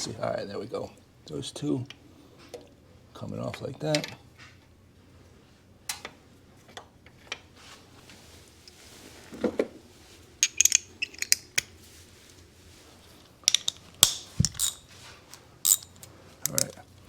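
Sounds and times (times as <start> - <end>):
metal tools clinking: 10.4 - 11.6.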